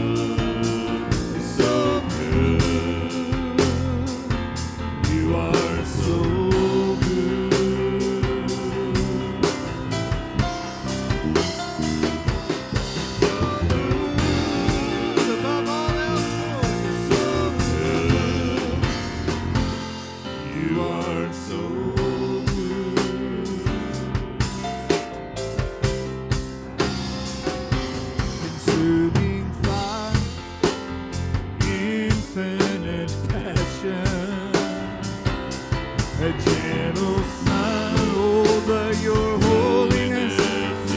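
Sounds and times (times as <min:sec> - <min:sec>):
drum kit beat: 0:00.0 - 0:20.3, 0:22.0 - 0:40.9
live band playing: 0:00.0 - 0:20.3, 0:22.0 - 0:40.9
bending melody line: 0:06.2 - 0:20.0, 0:36.2 - 0:40.9.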